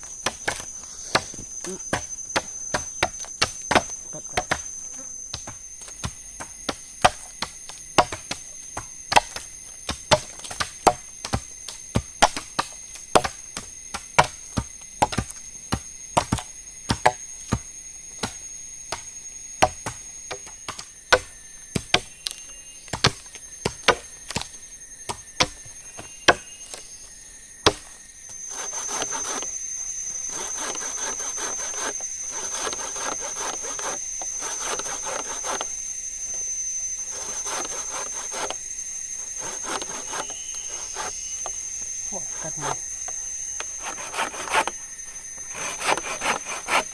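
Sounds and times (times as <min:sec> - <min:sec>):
wood being chopped: 0:00.0 - 0:26.9, 0:27.6 - 0:29.5, 0:30.3 - 0:35.7
hand saw cutting wood: 0:28.5 - 0:29.5, 0:30.3 - 0:35.7, 0:37.1 - 0:38.6, 0:39.3 - 0:41.1, 0:43.7 - 0:44.8, 0:45.5 - 0:46.9.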